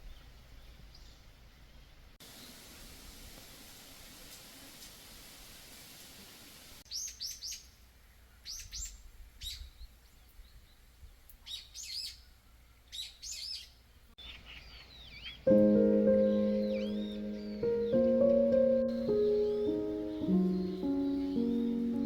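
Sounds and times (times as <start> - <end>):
songbirds chirping: 0.0 - 5.4, 6.0 - 22.0
soft sustained music: 15.5 - 22.0.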